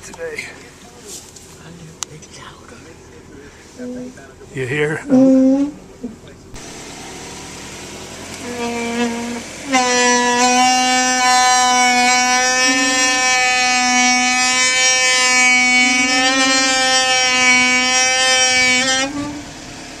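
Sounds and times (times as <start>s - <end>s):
brakes squealing: 0.0s - 20.0s.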